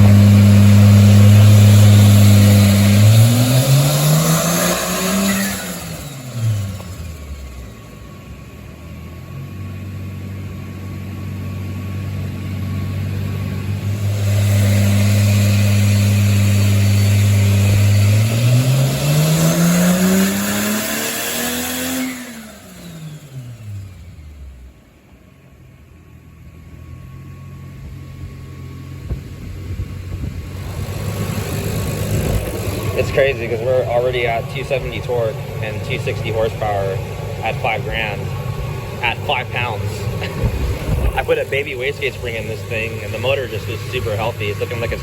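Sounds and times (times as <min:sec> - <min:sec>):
car engine revving on dyno: 0:00.0 - 0:08.0, 0:08.9 - 0:24.8, 0:29.7 - 0:45.0.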